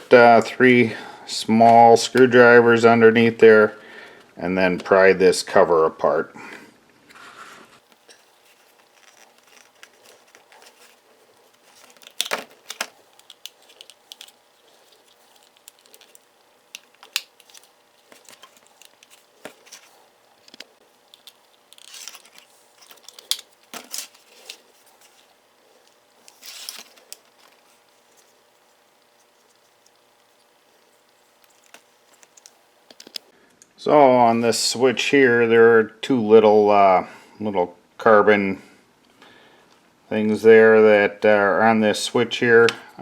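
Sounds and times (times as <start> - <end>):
screwdrivers clicking on plastic: 7.9 - 28.4, 29.0 - 33.3.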